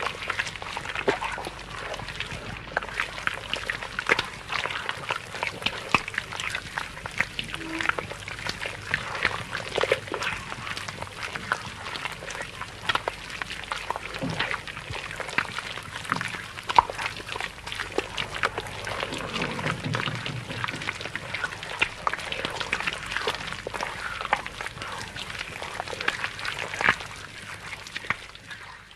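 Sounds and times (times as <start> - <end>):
low monster groans: 17.7 - 21.8.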